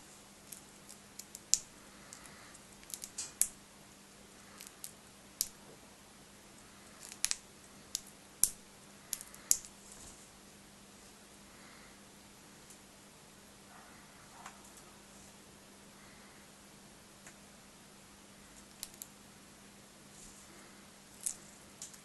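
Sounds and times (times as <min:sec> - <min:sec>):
bird cracking seeds: 0:00.5 - 0:03.6, 0:07.0 - 0:09.7.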